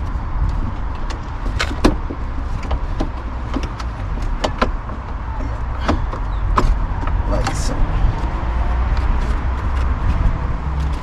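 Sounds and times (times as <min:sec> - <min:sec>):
steady low rumble: 0:00.0 - 0:11.0
clicks and knocks of lock parts: 0:00.4 - 0:07.7.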